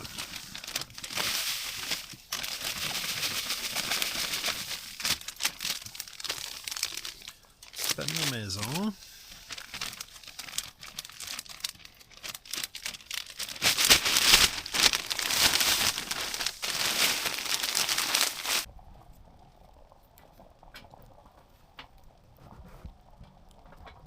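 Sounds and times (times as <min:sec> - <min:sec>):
packaging crinkling: 0:00.0 - 0:18.7.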